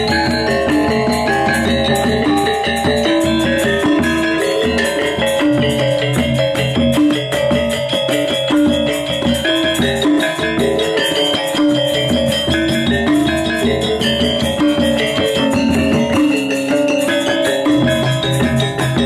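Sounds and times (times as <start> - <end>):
instrumental music with ringing notes: 0.0 - 19.0.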